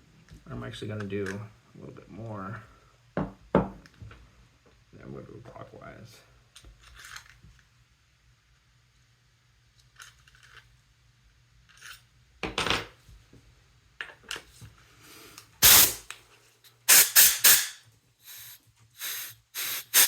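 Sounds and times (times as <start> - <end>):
regulator air bursts: 15.6 - 16.1, 16.8 - 20.0.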